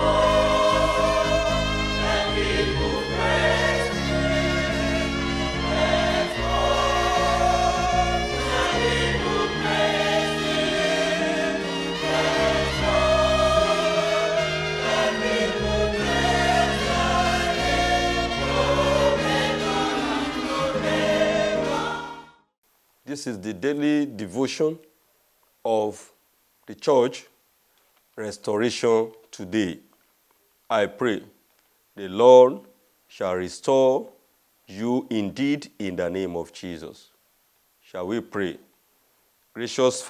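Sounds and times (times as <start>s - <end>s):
steady bass line: 0.0s - 21.9s
choir singing gospel: 0.0s - 22.4s.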